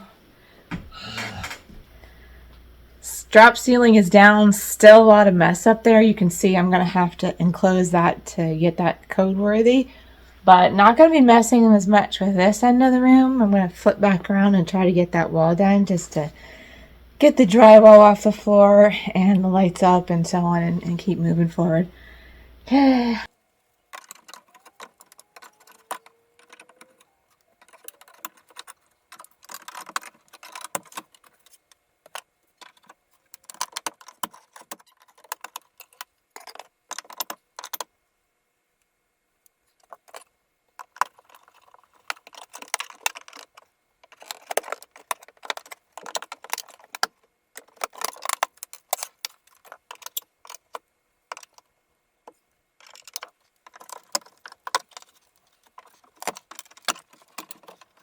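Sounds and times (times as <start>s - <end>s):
debris clattering and rattling: 52.8s - 58.0s.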